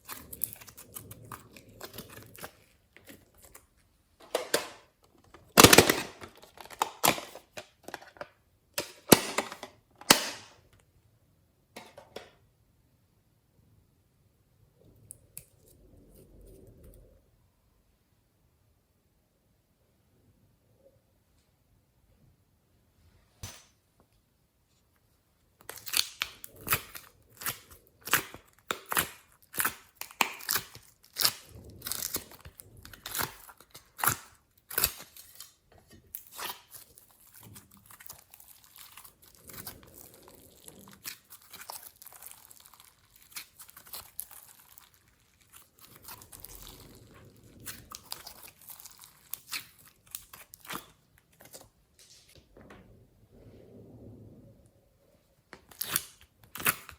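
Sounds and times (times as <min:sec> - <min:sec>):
sticky slime crackling: 0:00.0 - 0:03.9, 0:25.6 - 0:51.8, 0:55.6 - 0:56.9.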